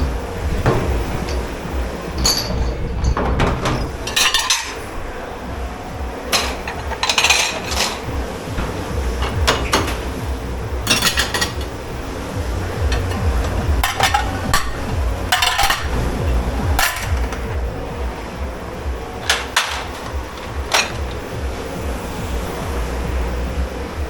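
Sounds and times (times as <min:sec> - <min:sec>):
dishes and cutlery clattering: 0:00.0 - 0:05.0, 0:06.3 - 0:12.0, 0:12.7 - 0:17.6, 0:19.2 - 0:21.4
steady low hum: 0:00.0 - 0:24.0.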